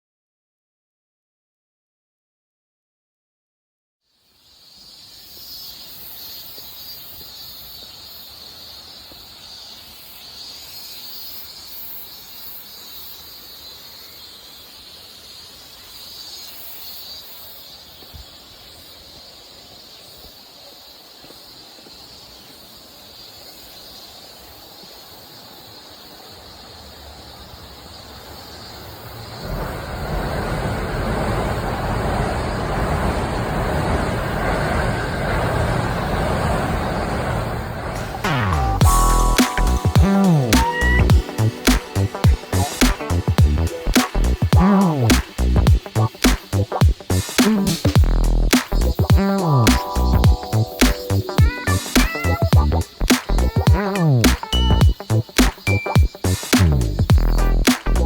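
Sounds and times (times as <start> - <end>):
faint high insect hum: 4.1 - 37.5, 39.0 - 58.0
rushing vehicle noise: 29.1 - 58.0.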